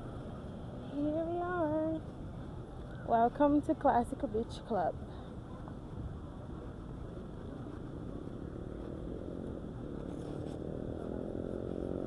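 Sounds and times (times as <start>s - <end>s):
street traffic rumbling: 0.0s - 12.0s
vehicle engine approaching: 7.6s - 12.0s.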